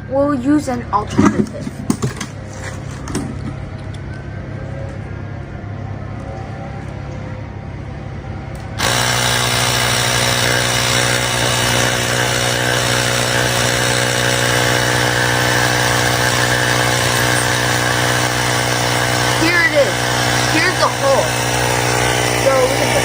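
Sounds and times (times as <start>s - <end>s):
electric air pump running: 8.7s - 23.0s.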